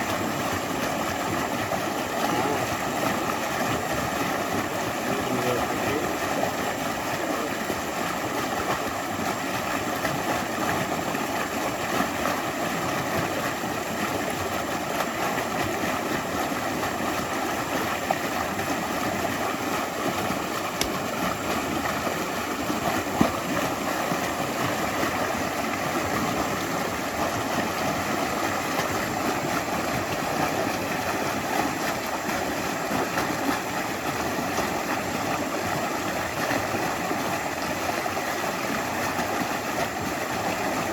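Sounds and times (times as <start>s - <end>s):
stream flowing over stones: 0.0s - 40.9s
faint splashes: 1.8s - 9.4s.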